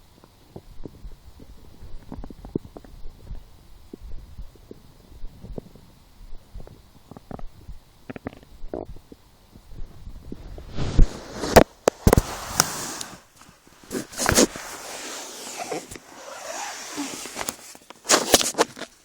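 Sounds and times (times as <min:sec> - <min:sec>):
rustling: 0:10.0 - 0:19.0.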